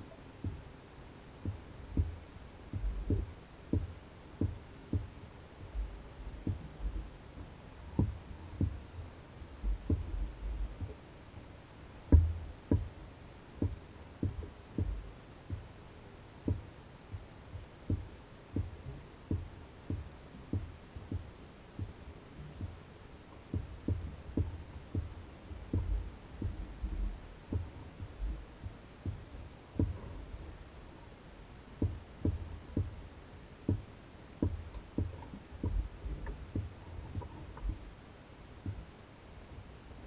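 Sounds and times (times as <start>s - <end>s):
small waves slapping canoe hull: 33.7s - 38.0s.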